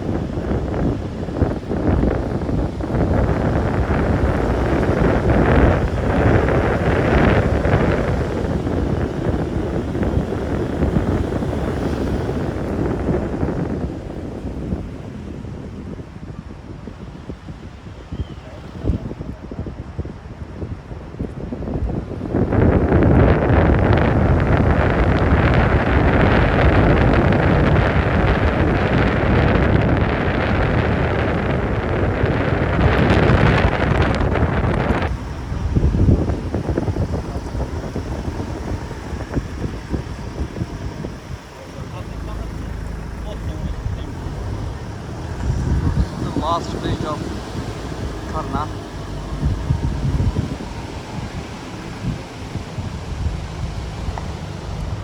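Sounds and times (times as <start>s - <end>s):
wind buffeting microphone: 0.0s - 55.0s.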